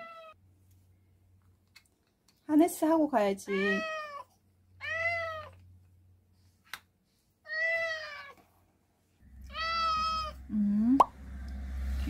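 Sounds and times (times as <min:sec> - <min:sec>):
cat meowing: 0:00.0 - 0:00.4, 0:03.5 - 0:05.6, 0:07.5 - 0:08.4, 0:09.4 - 0:10.5.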